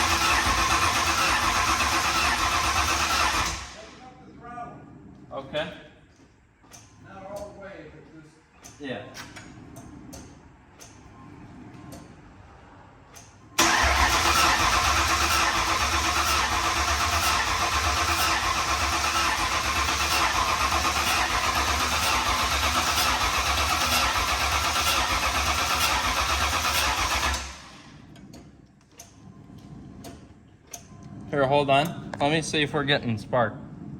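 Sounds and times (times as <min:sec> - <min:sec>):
starter motor cranking: 0:00.0 - 0:04.0, 0:13.1 - 0:32.8.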